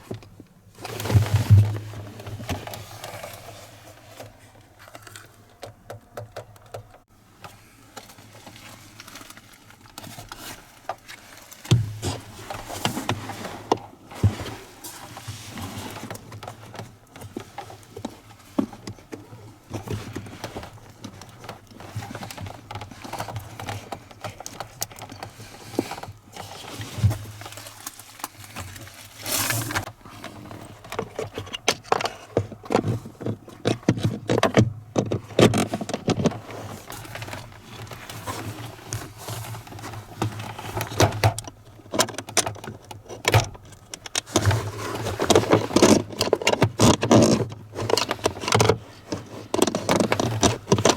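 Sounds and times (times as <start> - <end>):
plastic scraping: 0.0 - 7.0, 19.8 - 50.9
clicks and rattles of plastic parts: 4.2 - 13.8, 15.8 - 50.9.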